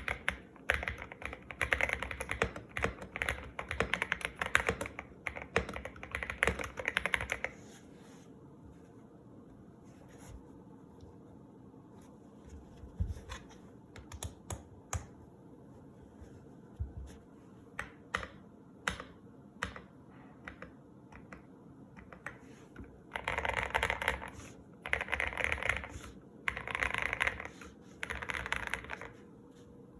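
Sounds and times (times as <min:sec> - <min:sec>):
mechanical keyboard typing: 0:00.0 - 0:07.6, 0:13.9 - 0:15.1, 0:23.1 - 0:29.2.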